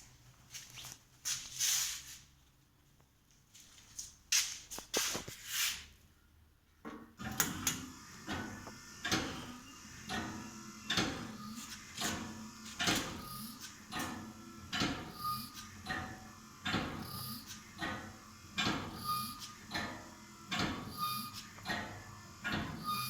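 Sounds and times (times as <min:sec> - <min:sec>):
motor whine: 0:07.4 - 0:23.0.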